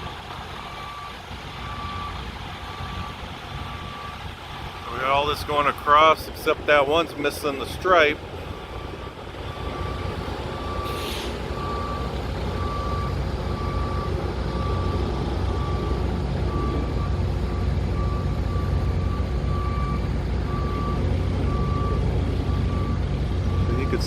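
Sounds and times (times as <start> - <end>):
low engine rumble: 0.0 - 24.0
backup alarm beeping: 0.6 - 4.2, 8.5 - 24.0
short hiss: 10.9 - 11.4.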